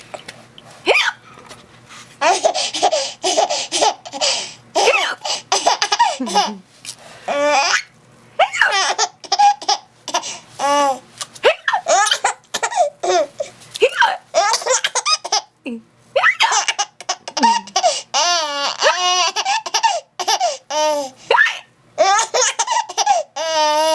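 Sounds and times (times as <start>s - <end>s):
baby giggling: 2.2s - 6.6s, 7.3s - 13.4s, 16.2s - 23.9s.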